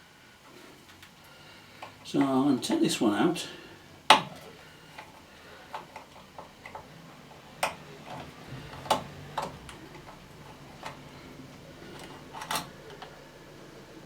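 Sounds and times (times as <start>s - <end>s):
fuse box clicks and taps: 4.1s - 6.9s, 7.6s - 10.2s.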